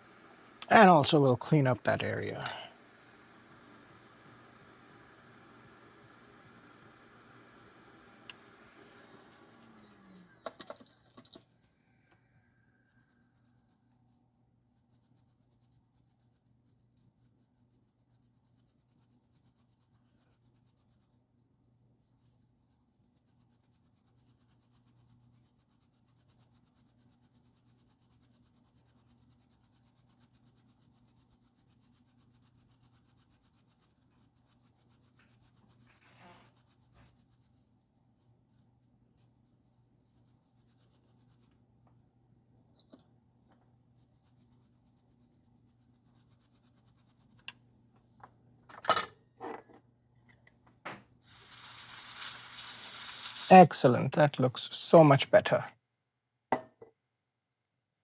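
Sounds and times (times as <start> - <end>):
scrubbing on circuit board: 51.3 - 55.1.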